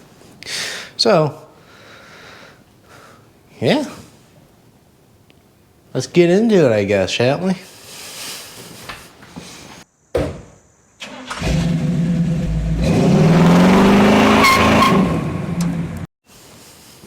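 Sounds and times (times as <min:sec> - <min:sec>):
engine revving: 0:11.3 - 0:16.1.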